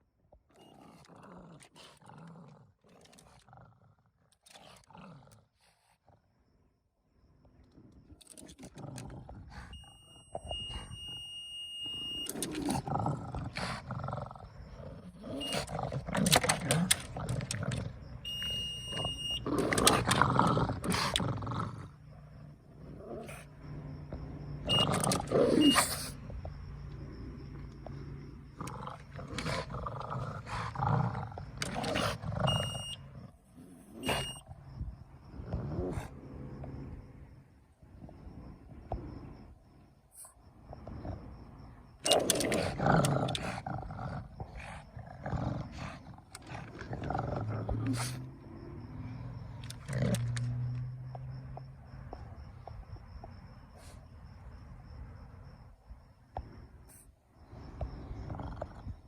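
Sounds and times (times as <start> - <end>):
dog growling: 0.5 - 6.3, 12.2 - 18.2, 18.9 - 23.9, 24.7 - 26.3, 26.9 - 34.5, 35.3 - 36.9, 40.8 - 50.7, 57.6 - 59.0
scooter horn electronic tone: 18.3 - 19.4
dog making throaty noises: 24.7 - 26.3, 40.7 - 48.5.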